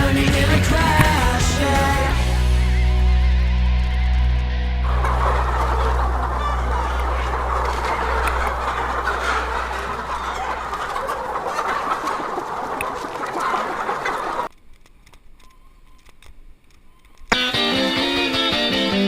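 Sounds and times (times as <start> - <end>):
fowl clucking and calling: 4.8 - 14.5.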